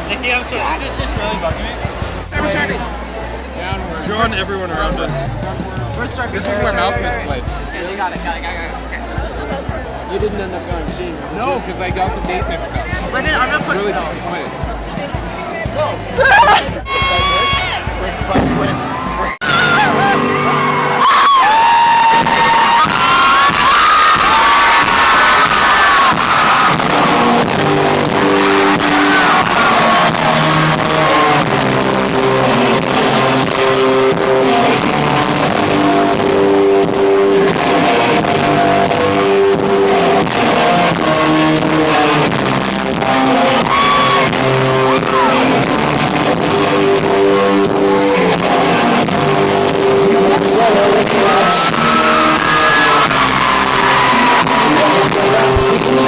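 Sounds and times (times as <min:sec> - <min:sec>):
live rock band: 0:01.0 - 0:56.0
audience whistles and cheers: 0:18.7 - 0:31.8, 0:47.2 - 0:48.9, 0:50.6 - 0:56.0.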